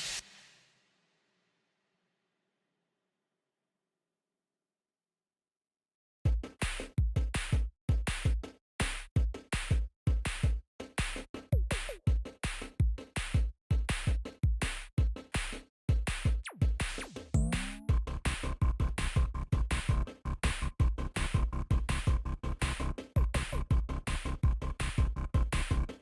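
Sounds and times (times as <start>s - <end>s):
electronic music with drum beat: 6.3s - 26.0s.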